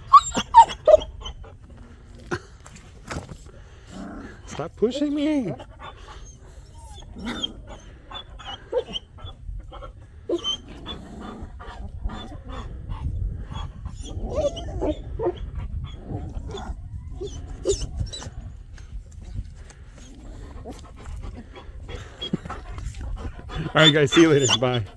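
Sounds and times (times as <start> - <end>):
puppies whimpering and yipping: 0.0 - 1.6, 4.9 - 11.0, 13.4 - 18.6, 20.6 - 24.9.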